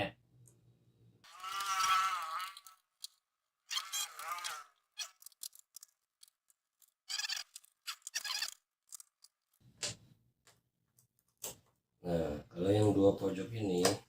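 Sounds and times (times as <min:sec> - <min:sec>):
short squeaks and scrapes: 0:01.3 - 0:05.9, 0:06.8 - 0:09.4
small clicks: 0:01.4 - 0:11.6
screwdriver removing screws: 0:02.6 - 0:09.4.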